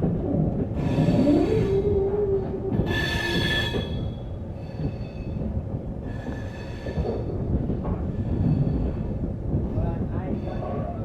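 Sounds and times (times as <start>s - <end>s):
train rumbling: 0.0s - 11.0s
wheels screeching on rails: 0.4s - 7.7s.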